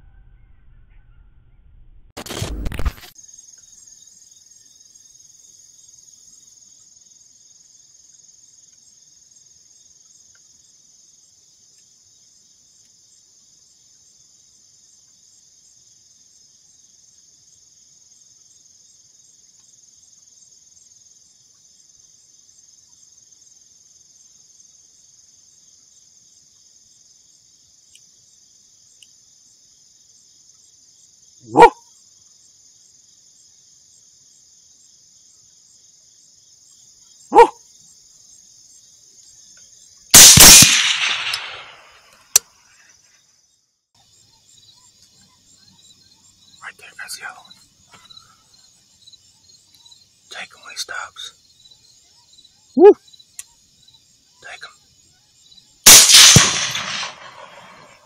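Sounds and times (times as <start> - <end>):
crickets chirping: 3.0 - 58.0
dog bark: 31.5 - 31.9, 37.3 - 37.6, 52.8 - 53.0.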